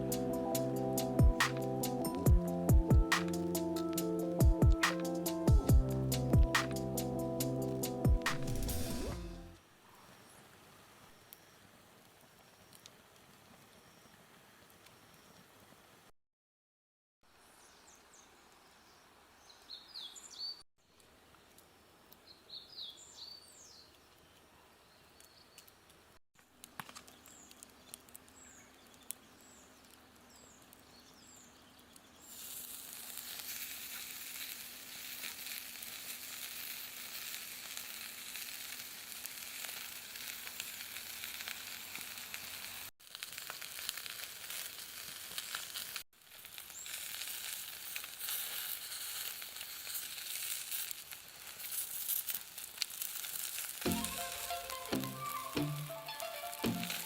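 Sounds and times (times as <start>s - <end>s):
food sizzling in a frying pan: 32.2s - 57.0s.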